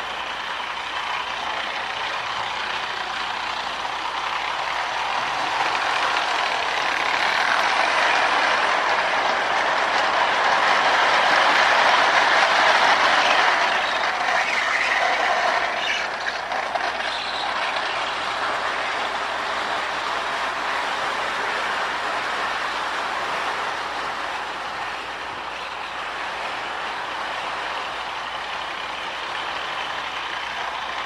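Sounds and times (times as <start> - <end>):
toy train motor whirring and rattling: 0.0 - 23.6.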